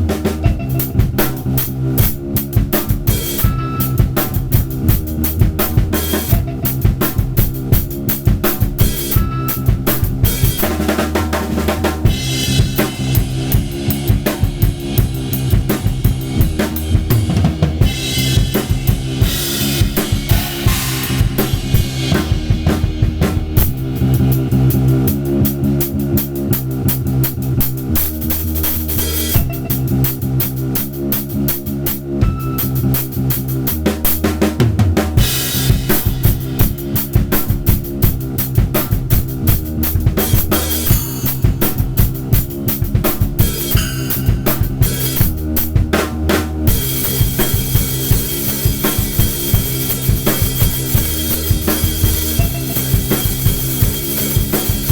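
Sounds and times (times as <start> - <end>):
fast drum kit playing: 0.0 - 54.9
steady low sampled tones: 0.0 - 54.9.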